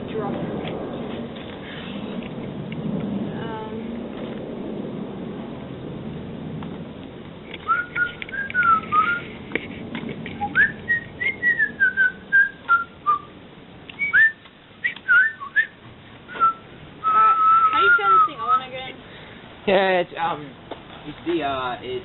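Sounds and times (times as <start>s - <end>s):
person whistling: 7.7s - 9.3s, 10.4s - 13.3s, 14.0s - 18.4s.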